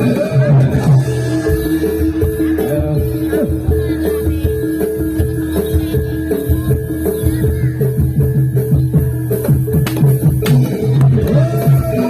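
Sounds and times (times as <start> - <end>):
gamelan music: 0.0 - 12.0.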